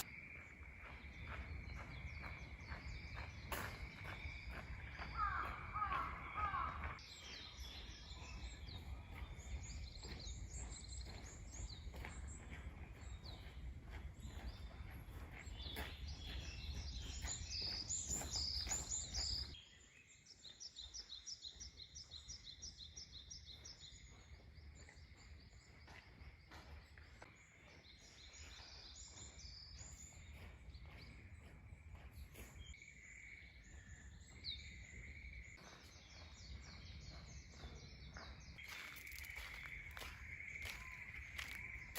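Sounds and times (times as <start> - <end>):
small birds chirping: 0.0 - 41.9.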